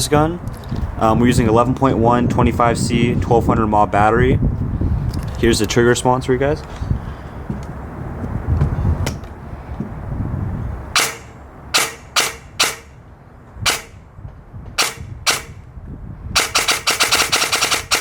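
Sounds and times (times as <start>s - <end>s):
airsoft rifle shots: 11.0s - 13.0s, 13.6s - 14.0s, 14.8s - 15.7s, 16.4s - 18.0s
rapid full-auto burst: 14.8s - 15.6s, 16.4s - 18.0s.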